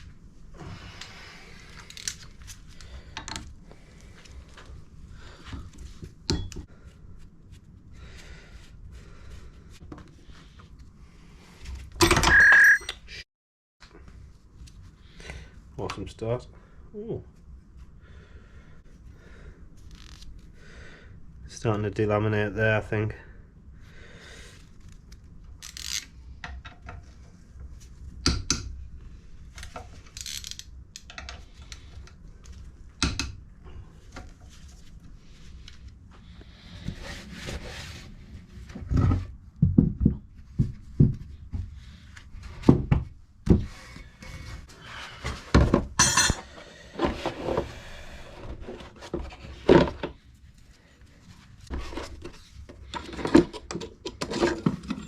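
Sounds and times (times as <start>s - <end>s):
metal parts and tools clinking: 12.0s - 13.0s, 46.0s - 46.5s.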